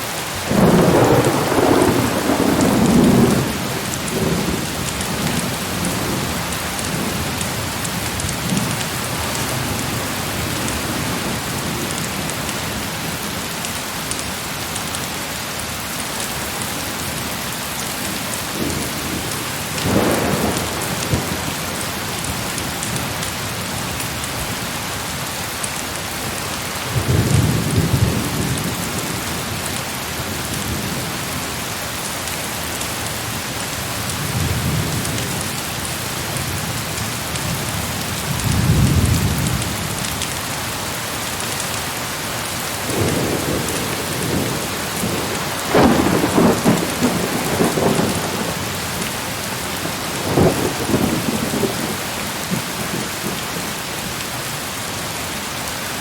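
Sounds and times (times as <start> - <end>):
heavy rain falling: 0.0 - 56.0
distant thunder rumbles: 0.5 - 12.1, 18.5 - 22.9, 42.8 - 53.4.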